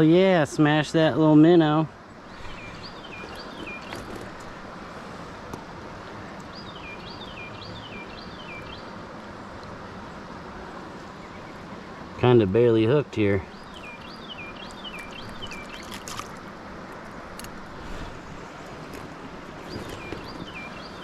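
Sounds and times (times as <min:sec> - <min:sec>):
stream water flowing: 0:13.2 - 0:21.0.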